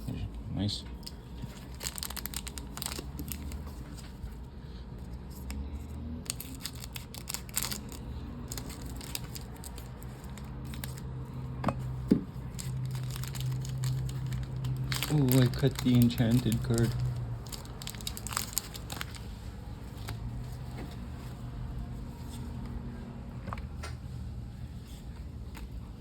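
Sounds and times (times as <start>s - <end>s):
foil wrapper tearing and crinkling: 1.4s - 4.1s, 6.2s - 11.1s, 12.4s - 19.4s.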